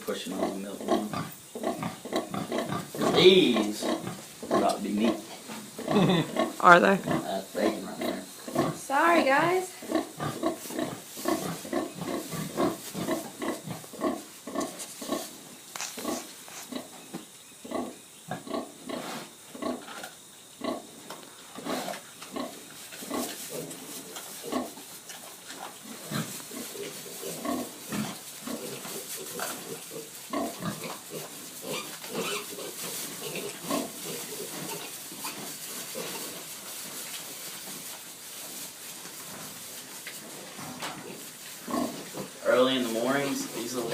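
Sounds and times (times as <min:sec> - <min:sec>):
pigs grunting: 0:00.0 - 0:08.9, 0:09.7 - 0:15.4, 0:25.5 - 0:36.5, 0:40.2 - 0:43.9.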